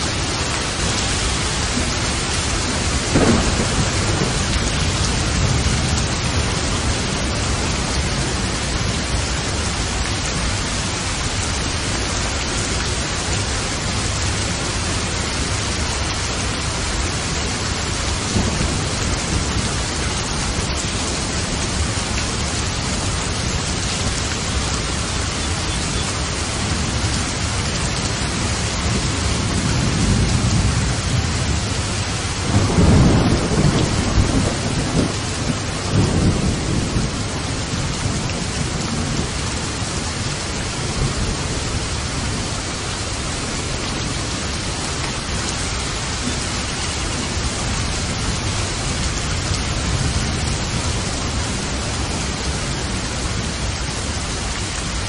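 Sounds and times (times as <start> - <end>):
thunder rumbling: 0.0 - 10.7, 16.6 - 45.4
steady rain: 0.0 - 55.0.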